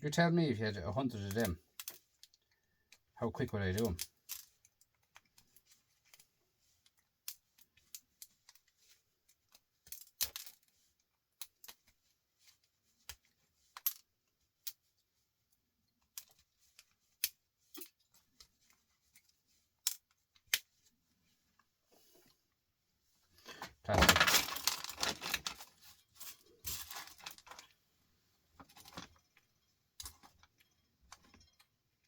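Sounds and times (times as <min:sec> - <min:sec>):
clinks of small metal parts: 0:23.6 - 0:27.7.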